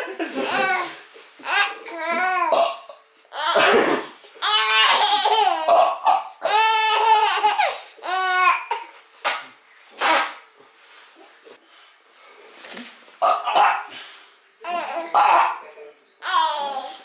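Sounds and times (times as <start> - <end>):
baby laughing hysterically: 4.4 - 7.8.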